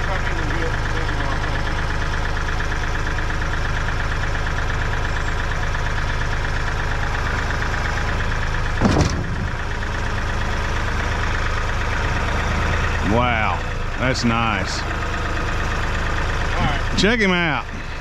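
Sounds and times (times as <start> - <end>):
tractor engine idling: 0.0 - 18.0
loud knock: 8.8 - 9.6.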